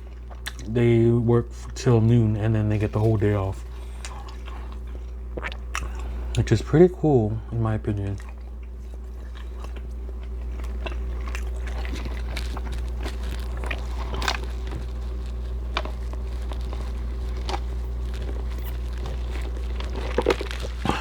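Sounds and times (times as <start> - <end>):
chewing food: 0.0 - 6.5, 7.9 - 21.0
steady low hum: 0.0 - 21.0.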